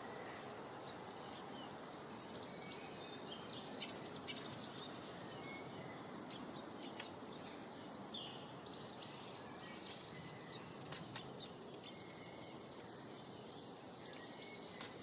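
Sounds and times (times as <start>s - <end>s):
small birds chirping and singing: 0.0s - 15.0s.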